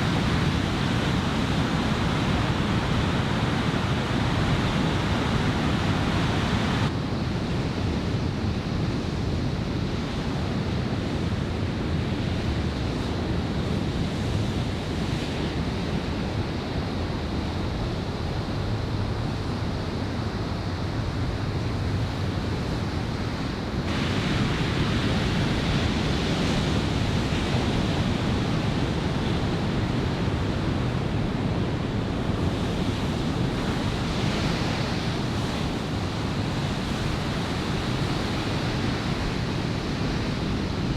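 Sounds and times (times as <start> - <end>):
ocean surf breaking: 0.0 - 6.9, 21.8 - 40.9
wind buffeting microphone: 0.0 - 40.9.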